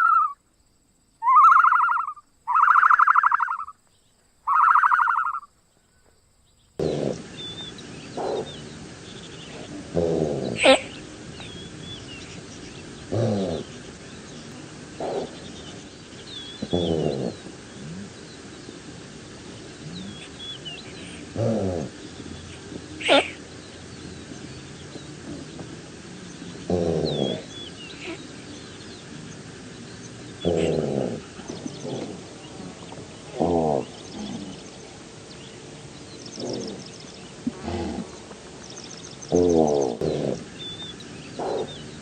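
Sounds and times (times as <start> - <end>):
wild animal call: 0.0 - 0.4, 1.2 - 3.8, 4.4 - 5.5, 6.8 - 18.5, 19.2 - 29.1, 30.3 - 34.9, 36.3 - 38.2, 39.2 - 42.0
faint bird chirps: 0.0 - 18.8, 19.4 - 42.0
high bird chirping: 1.2 - 5.5
animal giving harsh calls: 9.9 - 11.0, 23.0 - 23.4.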